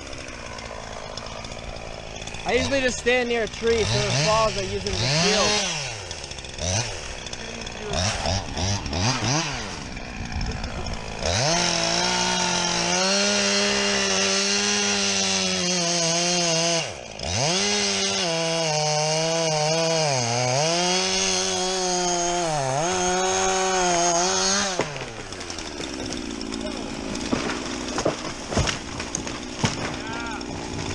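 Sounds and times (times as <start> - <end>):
chainsaw cutting into tree: 0.0 - 30.9.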